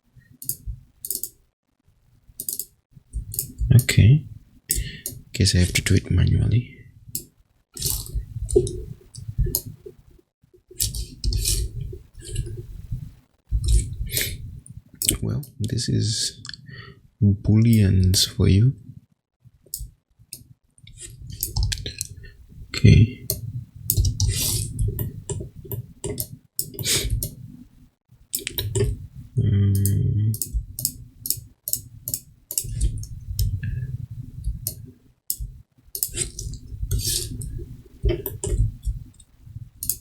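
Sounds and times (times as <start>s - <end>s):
computer mouse clicking: 0.4s - 1.4s, 2.4s - 3.9s, 4.7s - 5.2s, 7.2s - 9.8s, 10.8s - 12.6s, 13.6s - 15.2s, 21.3s - 22.2s, 23.2s - 27.4s, 28.3s - 29.0s, 29.8s - 33.6s, 34.4s - 40.0s
low rumbling handling noise: 28.4s - 40.0s.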